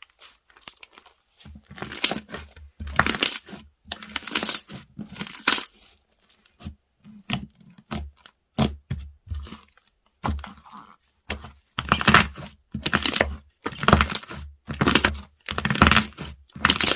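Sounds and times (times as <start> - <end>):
slime crackling and popping: 1.7 - 5.7, 11.8 - 16.9.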